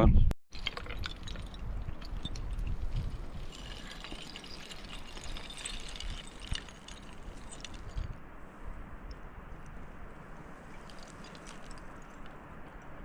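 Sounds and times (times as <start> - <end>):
wind rumble on microphone: 0.0 - 13.0
rope and gear rustling and clicking: 0.5 - 8.2, 10.6 - 12.9.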